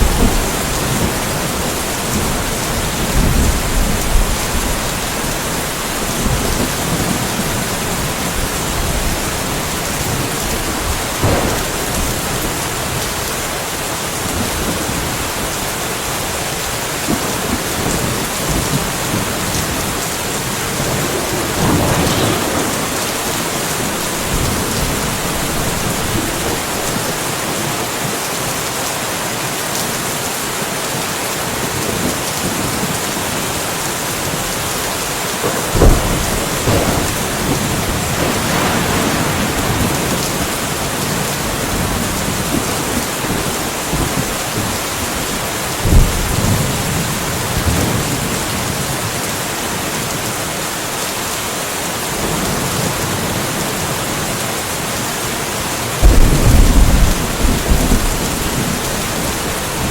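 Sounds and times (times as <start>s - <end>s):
thunder rumbling: 0.0s - 27.8s, 34.2s - 48.9s, 56.0s - 59.9s
steady rain falling: 0.0s - 59.9s.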